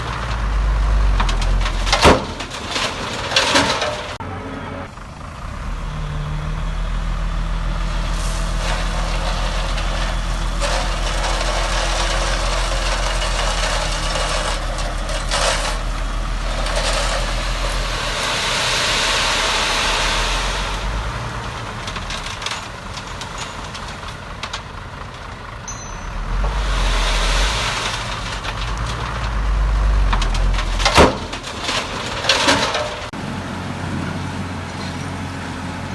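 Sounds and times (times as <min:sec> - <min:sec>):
rushing scraping noise: 0:00.0 - 0:04.9, 0:07.8 - 0:24.4, 0:26.0 - 0:33.2
diesel machinery engine drone: 0:00.0 - 0:35.9.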